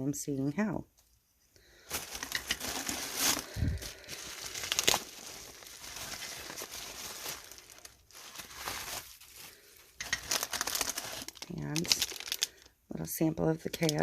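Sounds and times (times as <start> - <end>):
packing material crinkling: 1.6 - 12.8.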